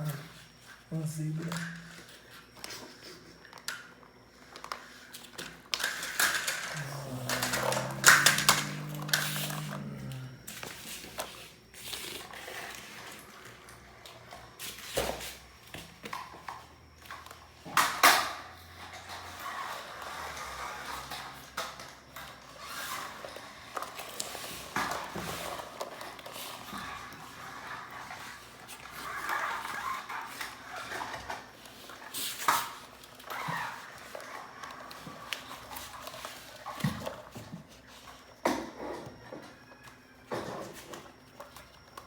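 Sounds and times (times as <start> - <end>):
plastic toys clicking and knocking: 4.5 - 9.9.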